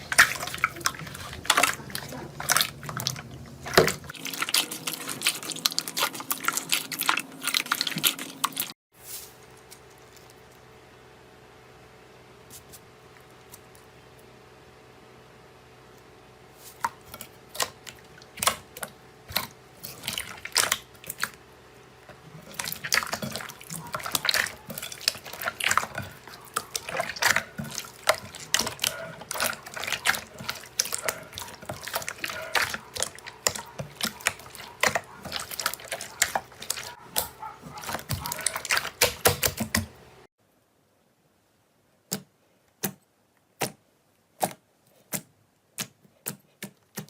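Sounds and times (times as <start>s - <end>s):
slime squishing: 0.0s - 8.7s, 16.6s - 21.4s, 22.1s - 39.9s.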